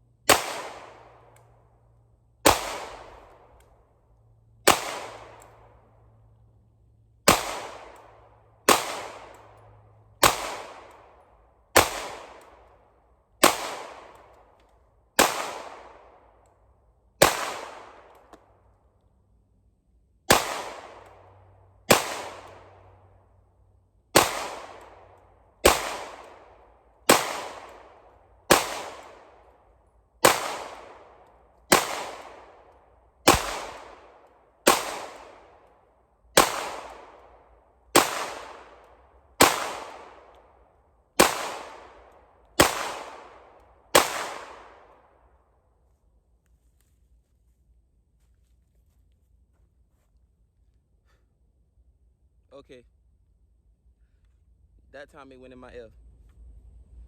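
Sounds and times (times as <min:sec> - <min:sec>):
pistol shots with echo: 0:00.3 - 0:01.5, 0:02.4 - 0:03.6, 0:04.6 - 0:05.8, 0:07.3 - 0:12.7, 0:13.4 - 0:14.6, 0:15.2 - 0:16.4, 0:17.2 - 0:18.5, 0:20.3 - 0:23.0, 0:24.1 - 0:29.6, 0:30.2 - 0:35.7, 0:36.3 - 0:45.2.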